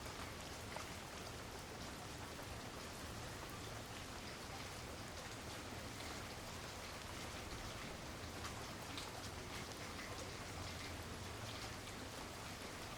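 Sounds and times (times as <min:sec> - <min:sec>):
raindrop ticks: 0:00.0 - 0:12.9
steady rain hiss: 0:00.0 - 0:12.9.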